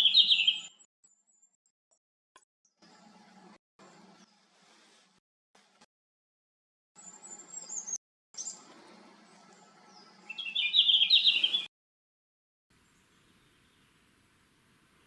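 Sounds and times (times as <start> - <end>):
bird singing high whistled notes: 0.0 - 0.8, 9.9 - 11.7.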